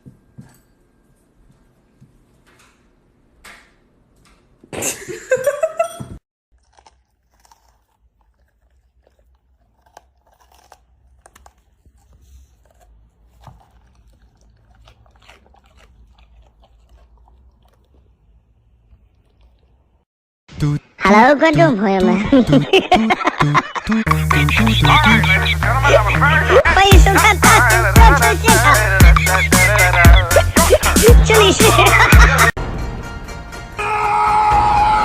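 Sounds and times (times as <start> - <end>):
crunchy chewing: 6.5 - 20.1
short rising cry: 33.8 - 35.0.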